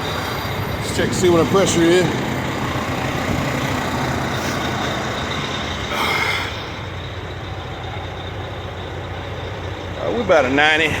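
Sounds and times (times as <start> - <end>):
truck engine idling: 0.0 - 11.0.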